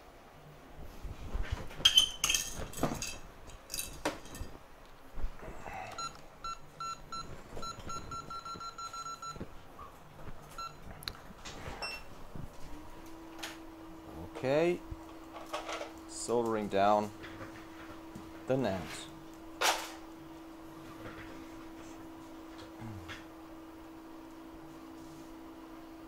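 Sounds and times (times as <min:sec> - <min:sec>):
tools clicking and clattering: 0:01.8 - 0:04.6.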